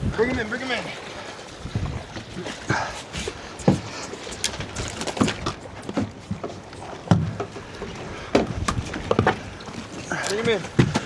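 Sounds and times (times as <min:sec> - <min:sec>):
heavy thumps on boat deck: 0:05.2 - 0:07.6, 0:08.3 - 0:09.4, 0:10.4 - 0:11.0.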